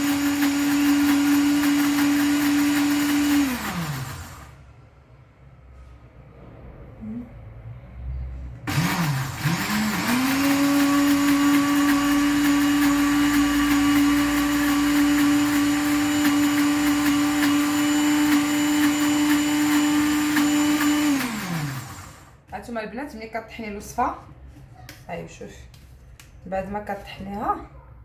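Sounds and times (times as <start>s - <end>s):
electric blender grinding: 0.0s - 4.6s, 8.7s - 22.4s.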